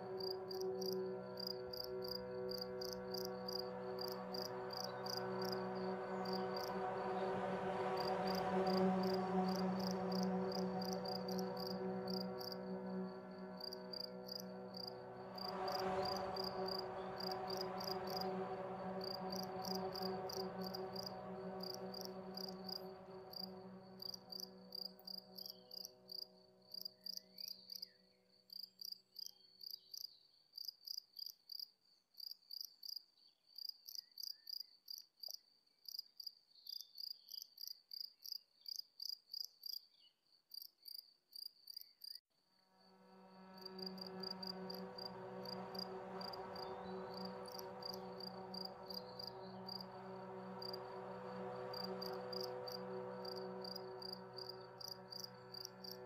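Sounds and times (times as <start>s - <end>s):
synth drone chord: 0.0s - 28.2s, 42.7s - 56.0s.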